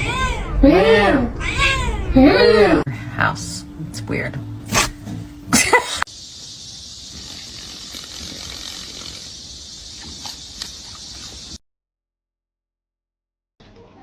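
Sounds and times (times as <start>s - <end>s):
steady high-pitched hiss: 5.5s - 11.6s.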